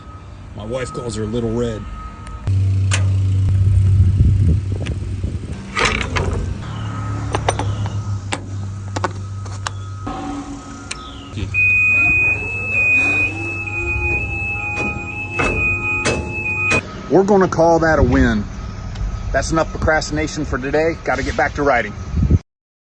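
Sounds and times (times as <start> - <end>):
machine clicks and clunks: 5.7 - 6.5, 14.1 - 16.8
high-pitched tone: 6.6 - 16.8.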